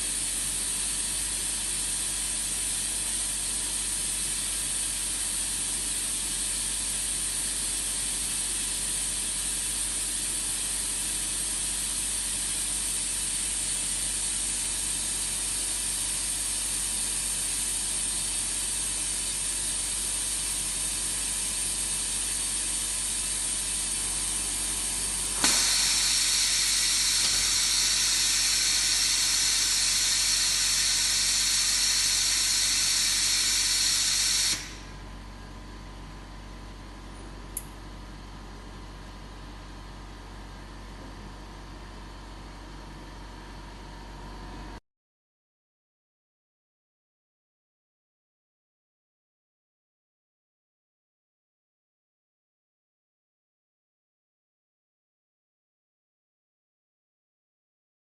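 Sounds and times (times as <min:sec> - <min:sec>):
steady hissing noise: 0:21.5 - 0:34.9.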